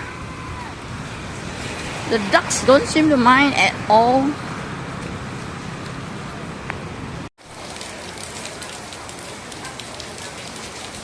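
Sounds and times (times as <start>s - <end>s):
heavy rain pattering: 4.6s - 11.0s.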